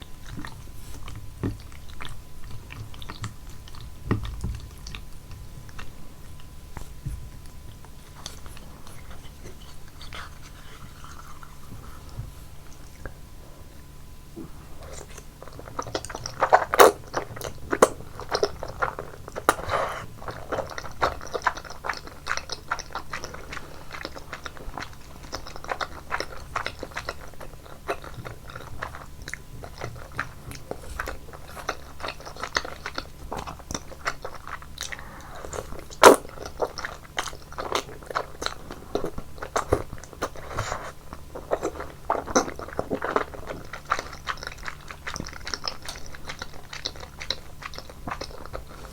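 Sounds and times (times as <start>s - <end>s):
chewing noodles: 0.0s - 48.9s
wet mouth clicks: 19.4s - 20.1s.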